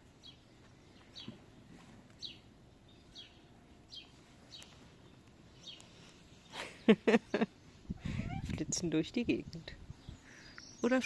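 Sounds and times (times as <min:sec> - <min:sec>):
small bird chirping: 0:02.1 - 0:08.7, 0:09.3 - 0:11.0.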